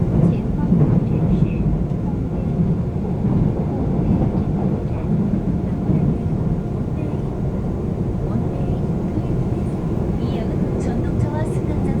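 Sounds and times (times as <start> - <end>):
subway train rumbling: 0.0 - 12.0.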